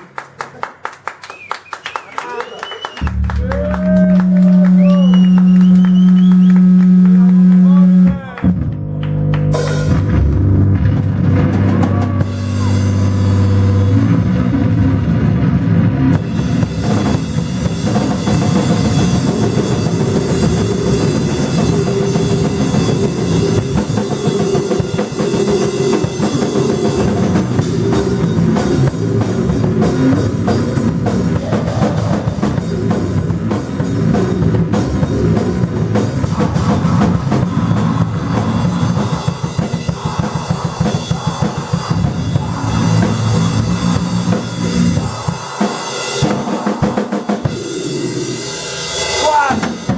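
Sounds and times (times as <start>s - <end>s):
low bass notes ringing: 3.0s - 16.5s, 41.9s - 45.3s
live rock band playing: 9.4s - 49.9s
drum kit with crashing cymbals: 9.5s - 49.9s.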